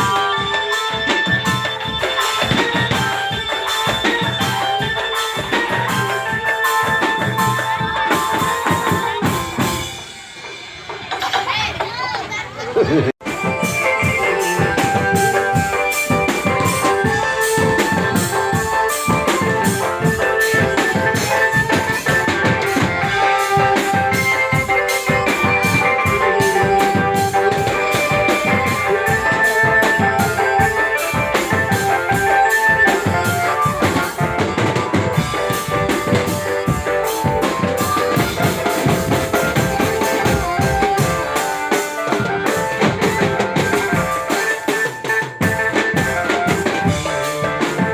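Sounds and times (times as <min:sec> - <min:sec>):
sustained keyboard melody: 0:00.0 - 0:10.6, 0:13.2 - 0:47.9
bass drums and snares: 0:13.2 - 0:44.5.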